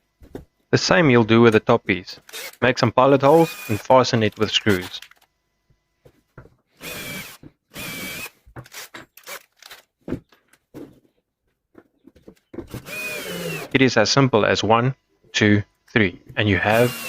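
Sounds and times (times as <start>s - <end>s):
power drill drilling into wood: 2.3s - 2.6s, 3.3s - 3.8s, 6.8s - 9.8s, 12.8s - 13.7s, 16.7s - 17.0s.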